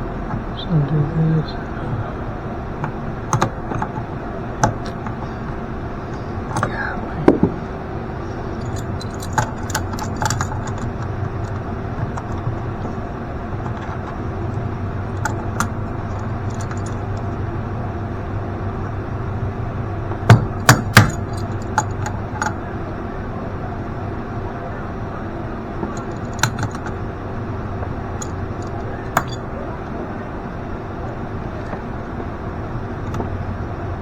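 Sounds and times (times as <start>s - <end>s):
steady low hum: 0.0s - 34.0s
hand tools clicking and knocking: 2.8s - 7.6s, 8.6s - 17.4s, 20.1s - 22.6s, 25.8s - 27.0s, 27.8s - 29.4s
loud sharp knocks: 20.1s - 21.3s.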